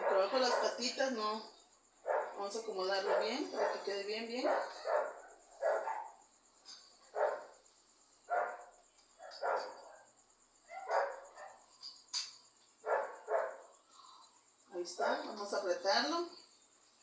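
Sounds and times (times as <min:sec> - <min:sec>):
dog barking: 0:00.0 - 0:00.8, 0:02.0 - 0:02.4, 0:03.0 - 0:06.3, 0:07.1 - 0:07.6, 0:08.3 - 0:10.1, 0:10.7 - 0:11.7, 0:12.8 - 0:13.7.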